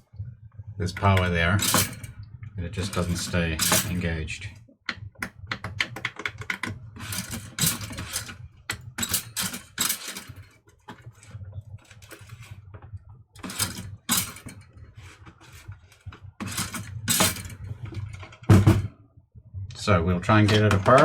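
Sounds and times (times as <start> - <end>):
toaster lever clicking: 1.6 - 2.1, 2.9 - 4.0.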